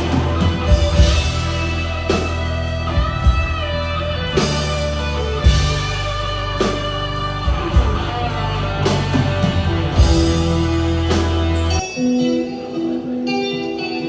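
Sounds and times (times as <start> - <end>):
drum hits: 0.0 - 11.7
sustained bass notes: 0.0 - 11.8
electric guitar: 0.0 - 14.0.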